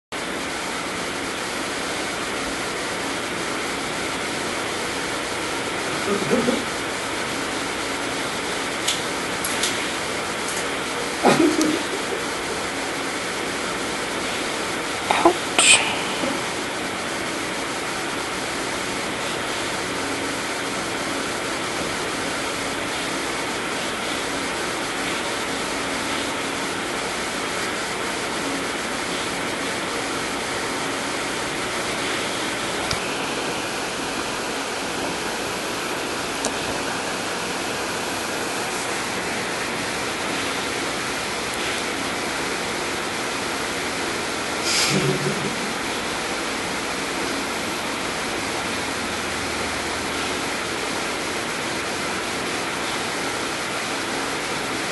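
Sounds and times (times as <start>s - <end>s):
steady hiss: 44.6s - 46.4s.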